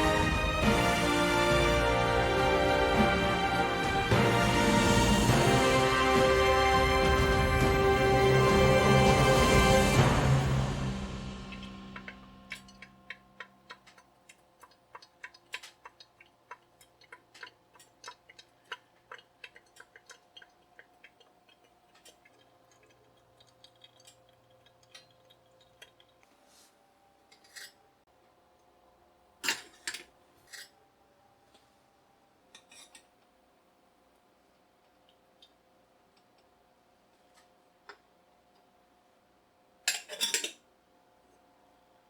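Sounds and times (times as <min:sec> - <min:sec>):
coffee maker ticking and clicking: 0:11.5 - 0:26.3
coffee dripping: 0:11.5 - 0:26.4.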